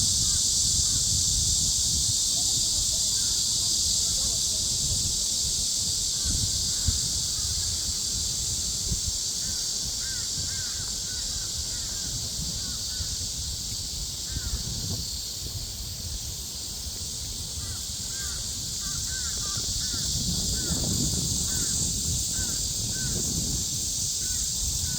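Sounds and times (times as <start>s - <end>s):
cicadas singing: 0.0s - 24.9s
wind rumble on microphone: 0.0s - 24.9s.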